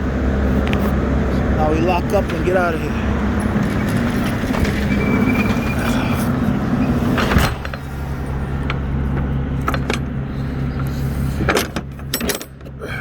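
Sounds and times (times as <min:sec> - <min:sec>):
vehicle engine idling: 0:00.0 - 0:13.0
metallic clicks and clanks: 0:11.4 - 0:12.7.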